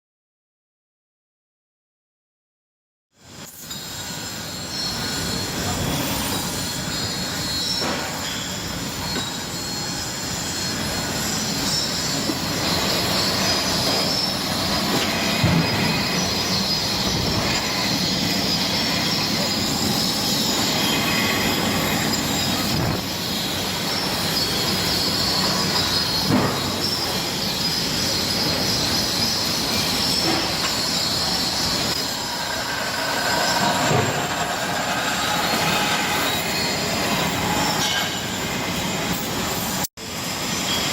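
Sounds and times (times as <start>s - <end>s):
grinder grinding metal: 4.2s - 39.8s.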